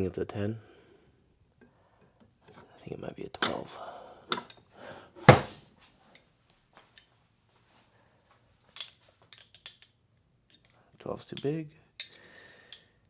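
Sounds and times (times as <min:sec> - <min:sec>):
metal hand tools clinking: 0:04.3 - 0:04.7, 0:10.5 - 0:12.8.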